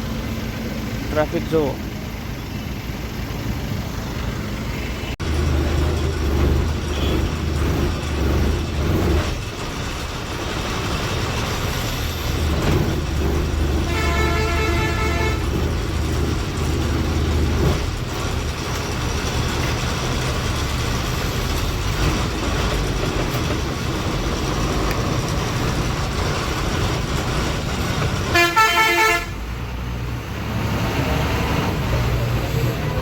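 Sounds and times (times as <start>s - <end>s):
truck and bus engines rumbling: 0.0s - 33.0s
vehicle horn honk: 6.9s - 7.3s, 13.8s - 15.5s, 28.3s - 29.4s.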